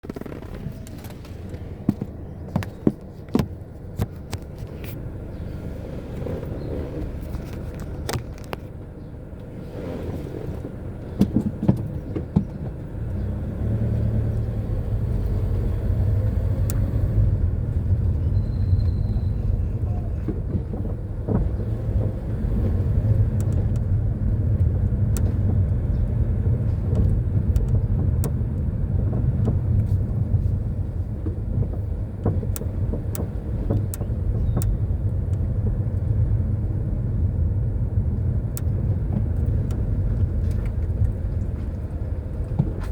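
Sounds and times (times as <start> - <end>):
road and engine rumble: 0.0 - 42.9.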